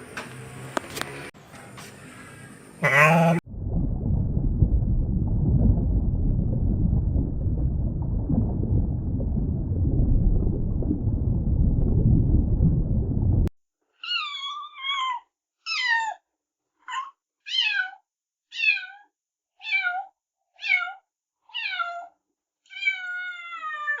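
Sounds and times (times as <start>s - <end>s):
cat meowing: 14.0s - 16.2s, 16.9s - 22.1s, 22.7s - 24.0s.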